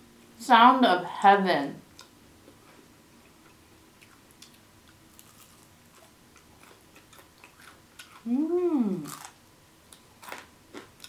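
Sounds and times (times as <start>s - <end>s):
crunchy chewing: 1.9s - 8.3s, 8.9s - 11.0s.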